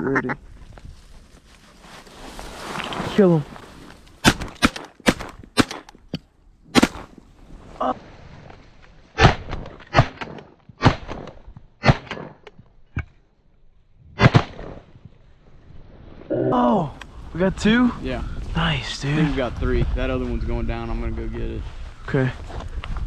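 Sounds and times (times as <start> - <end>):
shotgun blasts: 4.2 - 6.0, 6.7 - 7.2, 14.2 - 14.8.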